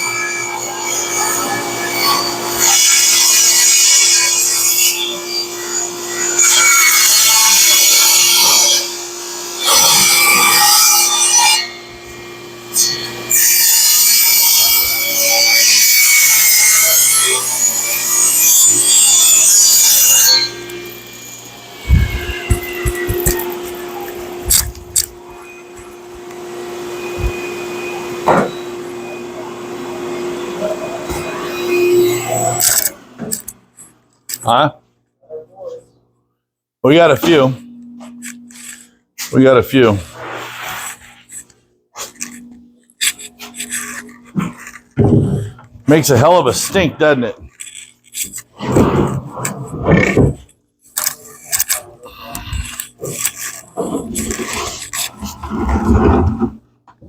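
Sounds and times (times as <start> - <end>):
power saw cutting wood: 0.0 - 33.5, 38.3 - 56.6
knocks and clunks: 45.0 - 45.6.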